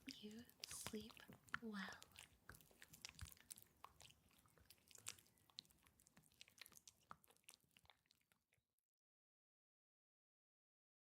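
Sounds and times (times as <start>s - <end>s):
wet sticky clicks and crackles: 0.0s - 8.6s.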